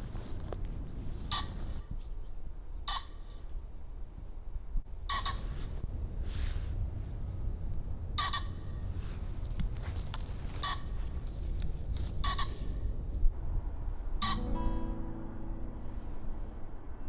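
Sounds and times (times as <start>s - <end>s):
bird calling: 1.1s - 1.8s, 10.5s - 11.2s, 12.2s - 12.9s.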